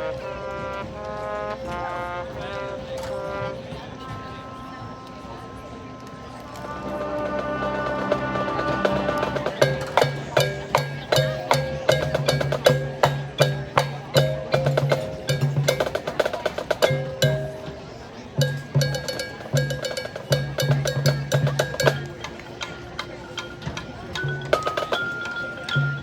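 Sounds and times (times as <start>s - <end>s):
marching band percussion: 6.7s - 26.0s.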